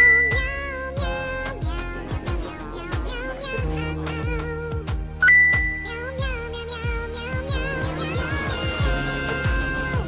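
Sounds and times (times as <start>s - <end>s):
wavering melody: 0.0s - 0.7s, 5.2s - 6.1s.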